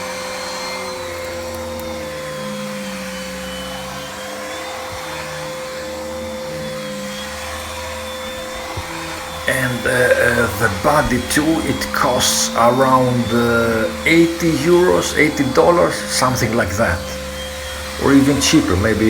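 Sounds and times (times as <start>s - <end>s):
vacuum cleaner motor whine: 0.0s - 19.0s
low drone shifting in pitch: 8.3s - 19.0s.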